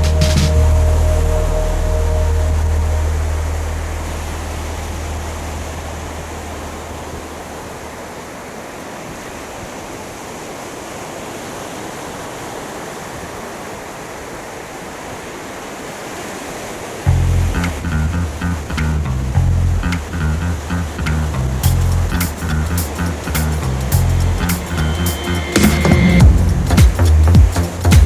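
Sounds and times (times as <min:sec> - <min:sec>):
background music bass: 0:00.0 - 0:08.0, 0:17.1 - 0:28.0
ocean surf: 0:00.0 - 0:19.2, 0:19.8 - 0:27.9.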